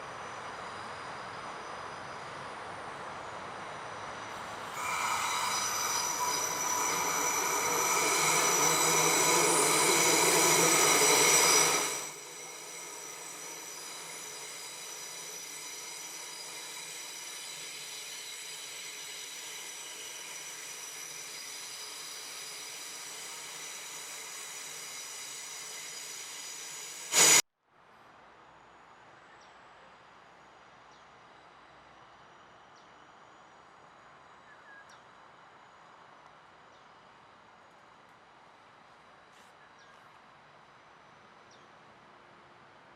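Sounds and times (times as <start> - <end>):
train brakes squealing: 0.0 - 27.4.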